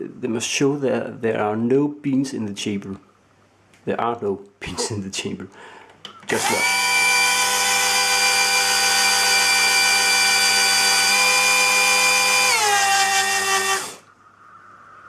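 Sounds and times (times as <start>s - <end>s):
grinder motor whining: 6.3s - 14.0s.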